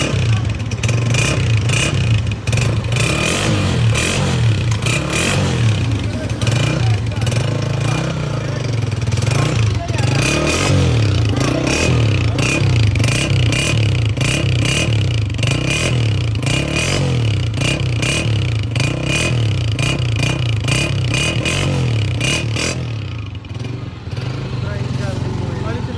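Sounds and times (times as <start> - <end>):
motorcycle engine revving: 0.0 - 25.9.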